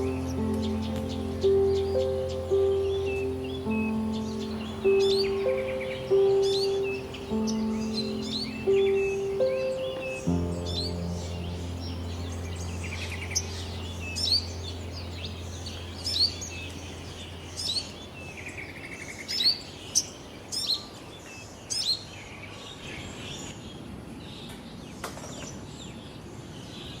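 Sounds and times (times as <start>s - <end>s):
bird trill: 0.0s - 20.9s
birds chirping: 0.0s - 21.0s.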